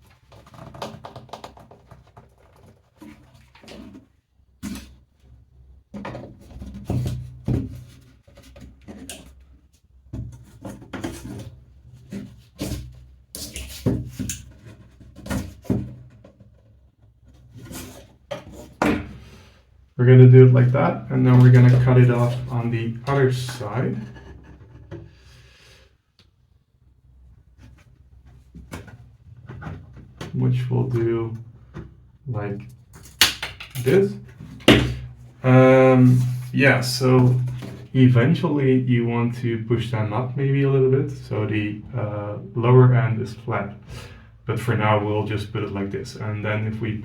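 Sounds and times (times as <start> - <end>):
plastic brackets knocking and scraping: 0.1 - 19.3, 21.3 - 25.2, 27.5 - 30.4, 32.6 - 35.4.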